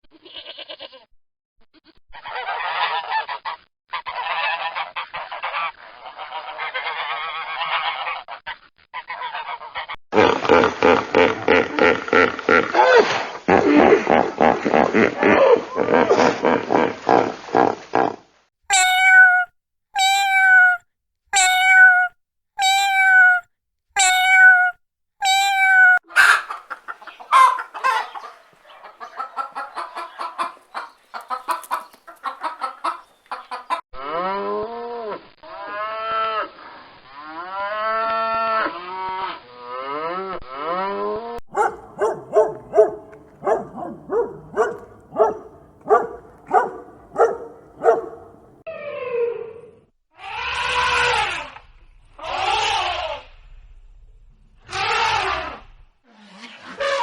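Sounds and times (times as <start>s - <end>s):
animal calls: 18.7s - 20.8s, 21.4s - 23.4s, 24.0s - 33.8s, 41.5s - 48.6s, 50.2s - 53.3s, 54.6s - 57.0s.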